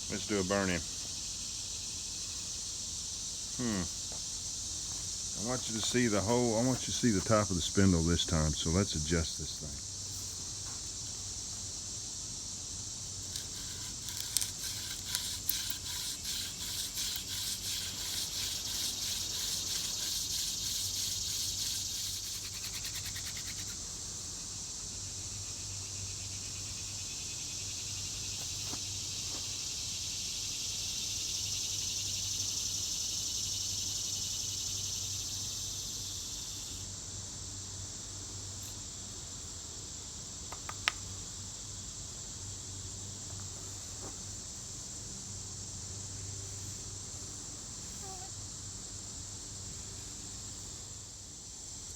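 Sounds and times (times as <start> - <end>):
insects buzzing: 0.0 - 51.9
hand drill rubbing on wood: 13.2 - 23.8.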